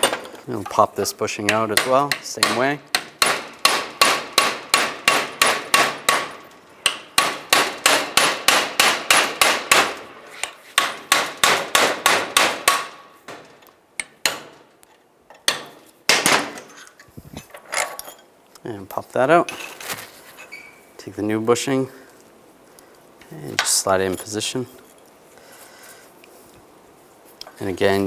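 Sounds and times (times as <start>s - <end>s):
hammer striking metal: 1.5s - 10.0s, 15.4s - 16.6s.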